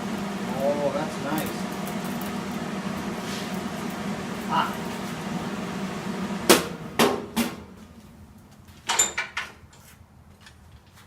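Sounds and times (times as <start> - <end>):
steady hum: 0.0 - 8.4.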